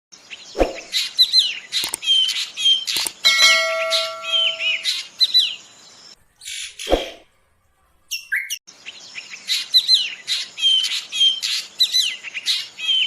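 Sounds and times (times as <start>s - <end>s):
bird singing harsh notes and whistles: 0.3s - 5.7s
bird clicks: 1.8s - 2.2s, 2.9s - 3.2s
bird ringing note: 3.1s - 5.1s.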